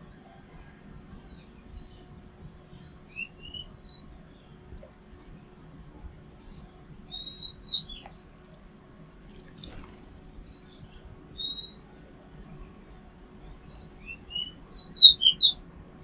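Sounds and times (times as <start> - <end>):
small birds chirping: 0.0 - 15.7
faint low background noise: 0.0 - 16.0.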